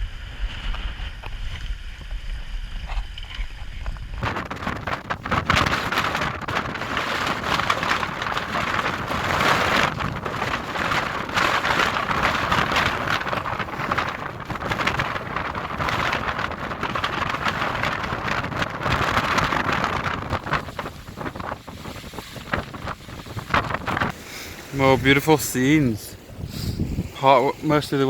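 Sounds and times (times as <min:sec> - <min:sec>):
strong wind over microphone: 0:00.0 - 0:28.0.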